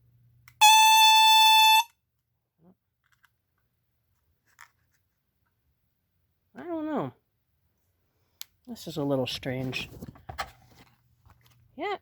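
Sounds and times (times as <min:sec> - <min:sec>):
shrill alarm horn tone: 0:00.6 - 0:01.9.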